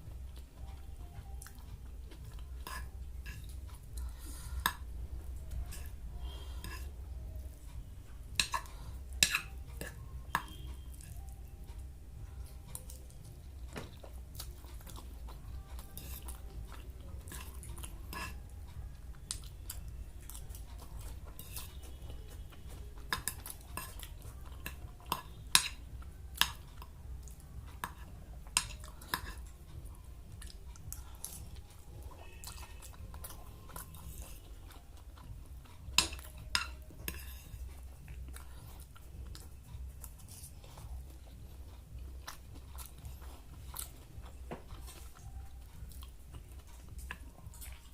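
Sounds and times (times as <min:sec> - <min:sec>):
chewing and crunching: 0:00.0 - 0:47.9
steady low hum: 0:00.0 - 0:47.9
cutlery clicking on a plate: 0:08.4 - 0:10.6, 0:36.0 - 0:37.4.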